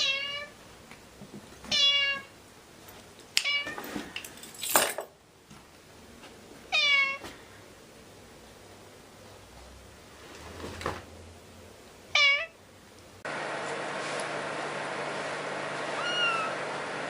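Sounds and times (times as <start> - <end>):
cat meowing: 0.0 - 0.6, 1.7 - 2.3, 6.7 - 7.2, 12.1 - 12.6, 15.9 - 16.6.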